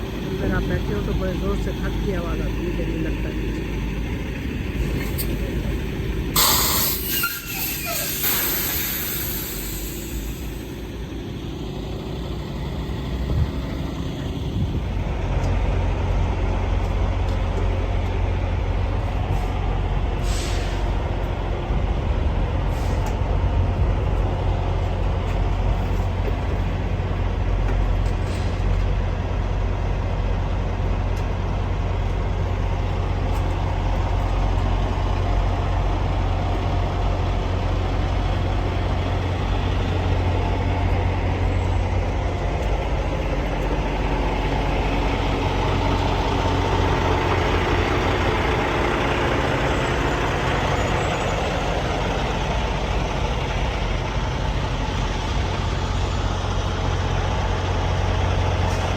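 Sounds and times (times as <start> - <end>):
truck diesel engine rumble: 0.0 - 58.9
air brake hiss: 6.4 - 10.8, 20.2 - 20.9, 22.7 - 23.2.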